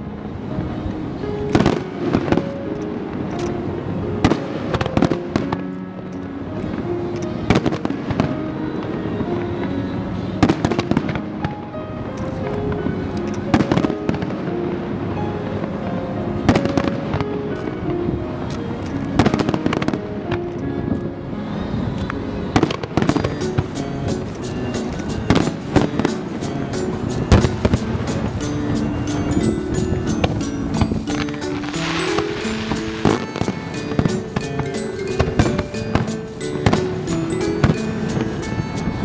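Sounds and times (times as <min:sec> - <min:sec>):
music with held notes: 0:00.0 - 0:39.0
fireworks bangs: 0:22.6 - 0:39.0.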